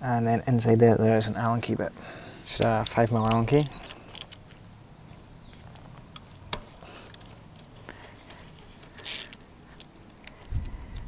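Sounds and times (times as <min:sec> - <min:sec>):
allen key metallic clicks: 0:02.5 - 0:04.7.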